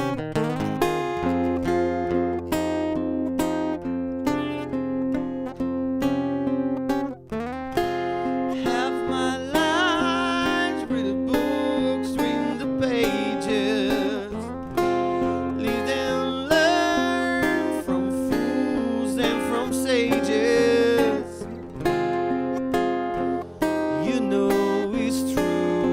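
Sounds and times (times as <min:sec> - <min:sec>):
strummed acoustic guitar: 0:00.0 - 0:25.9
person singing: 0:08.4 - 0:21.7, 0:23.2 - 0:25.9.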